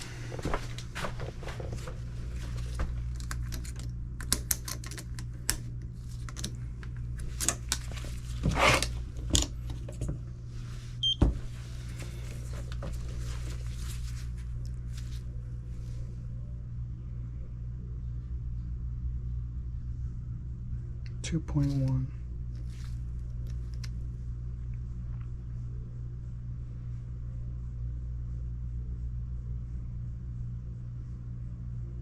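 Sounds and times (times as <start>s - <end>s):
steady low hum: 0.0s - 32.0s
tools clicking and knocking: 3.4s - 5.6s.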